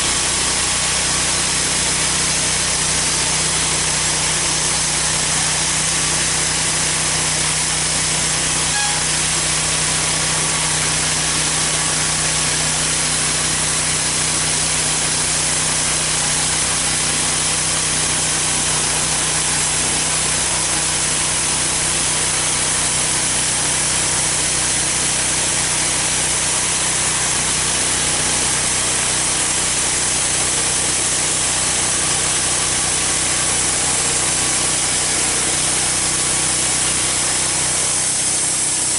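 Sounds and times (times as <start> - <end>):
band sawmill cutting log: 0.0 - 38.9
saw blade striking nail: 8.3 - 15.2.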